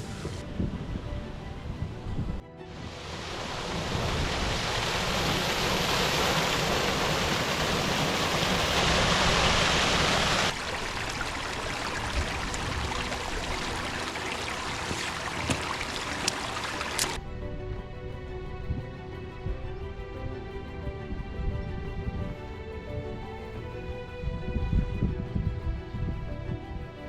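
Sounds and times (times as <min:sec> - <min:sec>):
stream rushing down slope: 0:02.7 - 0:17.2.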